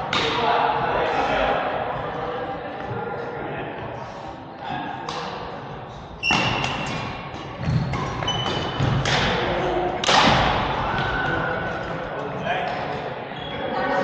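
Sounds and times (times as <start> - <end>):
shoe squeaks on court: 6.2 - 7.0, 7.8 - 9.0
racket hitting shuttlecock: 6.3 - 11.2.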